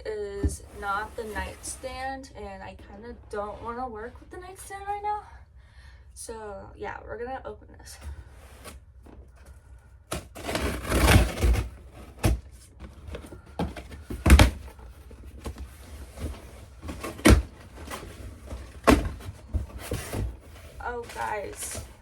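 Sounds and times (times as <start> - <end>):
cardboard box scraping: 0.5 - 2.2, 10.1 - 22.0.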